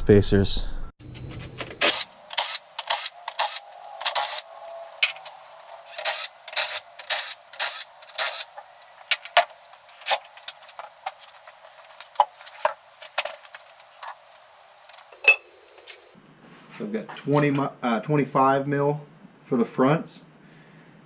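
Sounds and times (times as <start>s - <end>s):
hard parts clicking and clinking: 1.0s - 16.0s.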